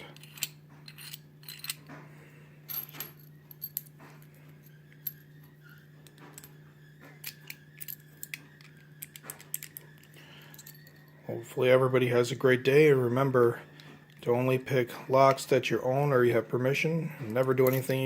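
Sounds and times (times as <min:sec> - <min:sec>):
small metal clicks and rattles: 0:07.2 - 0:11.0.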